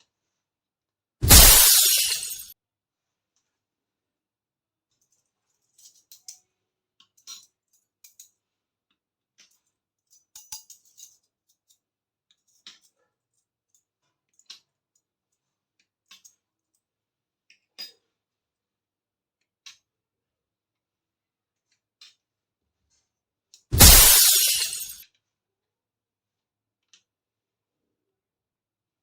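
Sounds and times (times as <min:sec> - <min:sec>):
small toy pieces clicking and clinking: 0:01.3 - 0:02.5, 0:09.4 - 0:11.8, 0:23.8 - 0:25.0.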